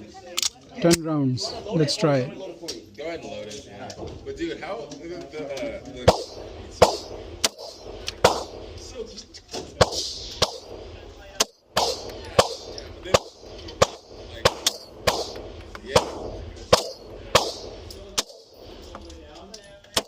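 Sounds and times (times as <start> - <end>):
pistol shots with ringing echo: 6.0 - 9.0, 9.7 - 18.8.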